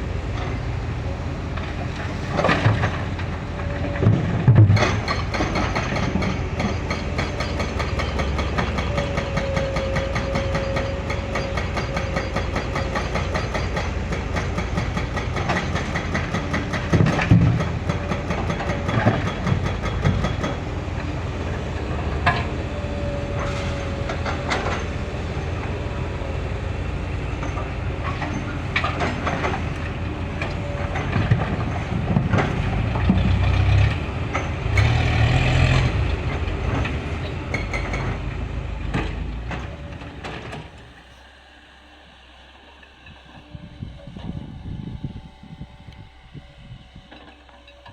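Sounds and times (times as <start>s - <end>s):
excavator running: 0.0s - 47.9s
wavering whine: 41.8s - 47.9s.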